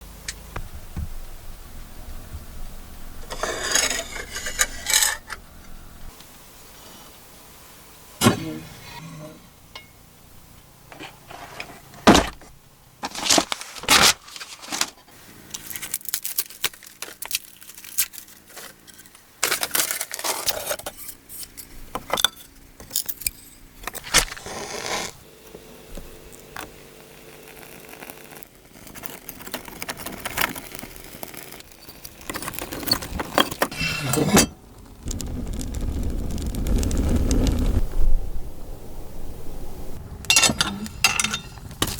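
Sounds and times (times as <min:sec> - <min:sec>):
metal and wood clanking: 0:10.9 - 0:13.5, 0:40.3 - 0:41.9.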